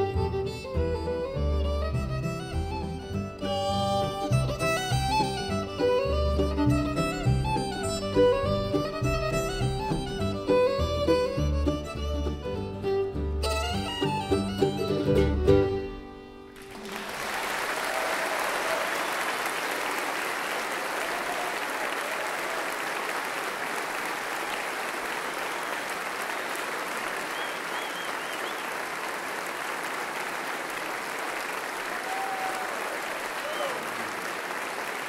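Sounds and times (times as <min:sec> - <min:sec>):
string band with guitar and fiddle: 0:00.0 - 0:16.9
audience applauding: 0:03.7 - 0:10.6, 0:16.5 - 0:35.0.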